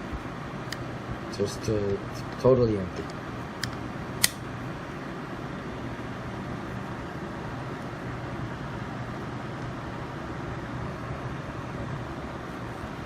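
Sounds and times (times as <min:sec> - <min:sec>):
fan-like background hum: 0:00.0 - 0:13.0
firearm lock clicks: 0:03.6 - 0:04.4.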